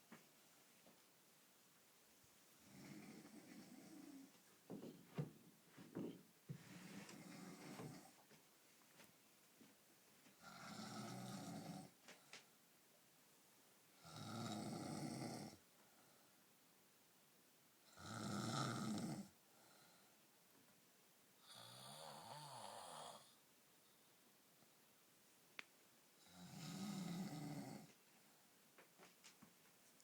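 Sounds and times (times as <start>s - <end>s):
man snoring: 10.5s - 11.9s, 14.0s - 15.6s, 18.0s - 19.3s, 21.4s - 23.3s, 26.3s - 27.9s.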